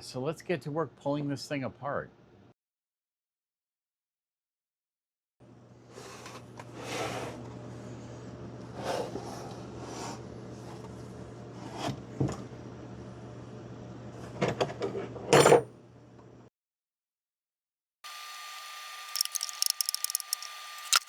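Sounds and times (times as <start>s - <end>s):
tools and metal parts clanking: 19.2s - 21.0s.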